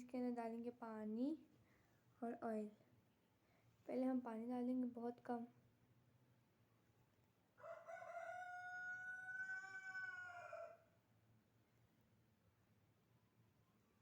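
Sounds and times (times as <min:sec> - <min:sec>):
distant rooster crowing: 0:07.6 - 0:11.0.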